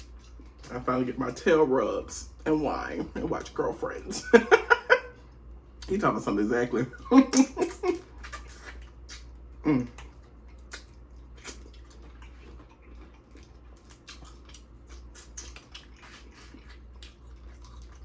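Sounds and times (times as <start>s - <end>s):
wet chewing and mouth smacks: 0.0s - 0.8s, 7.3s - 18.0s.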